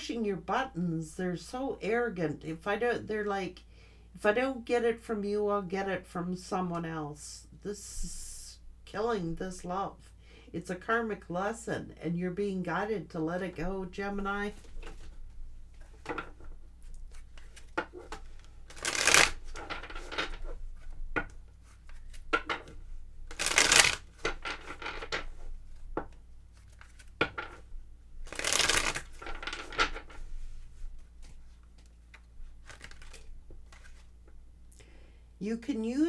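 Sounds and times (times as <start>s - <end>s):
cards being shuffled: 13.6s - 34.3s
small card clicks and taps: 31.2s - 34.0s.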